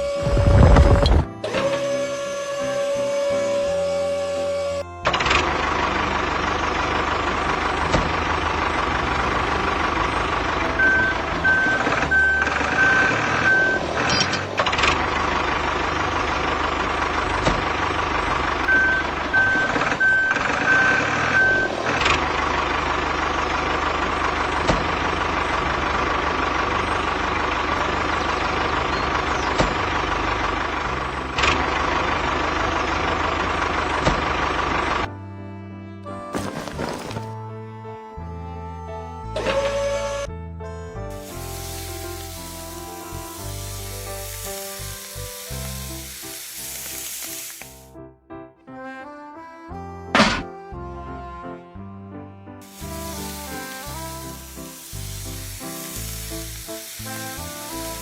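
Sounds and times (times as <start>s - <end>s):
reversing alarm beeping: 0.0s - 14.7s, 17.9s - 22.8s
truck engine running: 0.0s - 35.3s, 36.3s - 37.5s, 41.0s - 48.0s, 52.6s - 58.0s.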